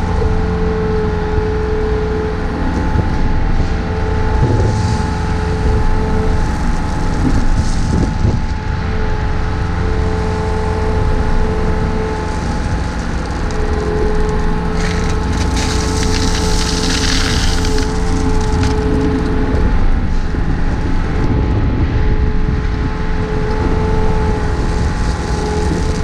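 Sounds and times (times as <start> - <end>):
excavator diesel engine running: 0.0 - 22.3
hydraulic whine: 0.0 - 26.0
rock and dirt scraping: 4.3 - 8.7, 12.0 - 19.5, 24.3 - 26.0.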